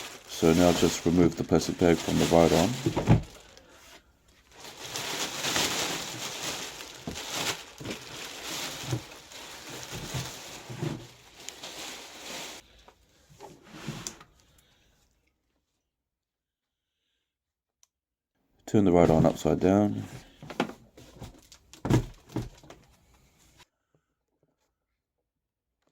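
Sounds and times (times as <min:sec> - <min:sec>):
plastic bag rustling: 0:00.0 - 0:12.8.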